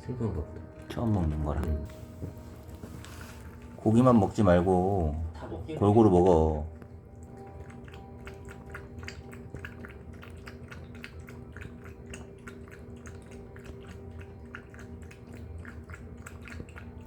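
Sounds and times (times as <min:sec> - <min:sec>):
dog eating wet mouth clicks: 0:06.7 - 0:17.0.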